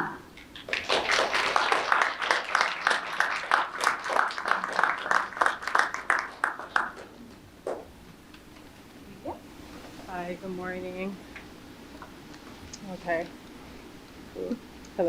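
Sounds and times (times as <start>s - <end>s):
small audience applauding: 0.4s - 7.9s.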